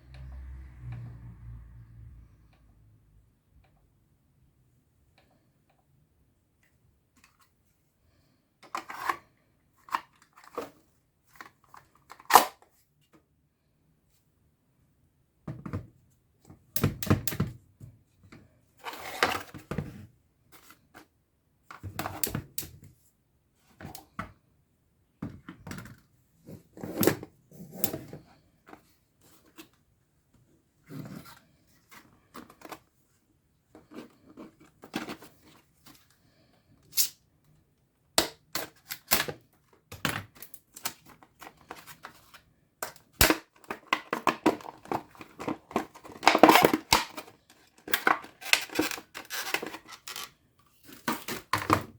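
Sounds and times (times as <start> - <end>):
packaging rustling: 43.7 - 51.5.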